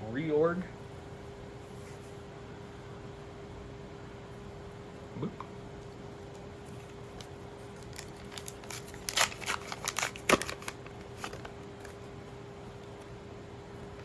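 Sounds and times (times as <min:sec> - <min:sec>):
faint steady hum: 0:00.0 - 0:14.0
foil wrapper crackling: 0:06.3 - 0:12.0.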